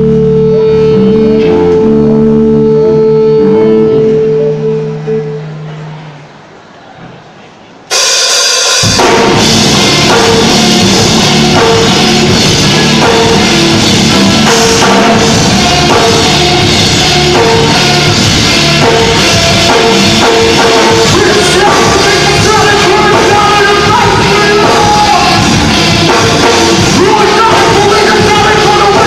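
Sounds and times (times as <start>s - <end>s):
rock band playing: 0.0s - 6.3s, 7.9s - 29.0s
bass and kick drum: 8.9s - 29.0s.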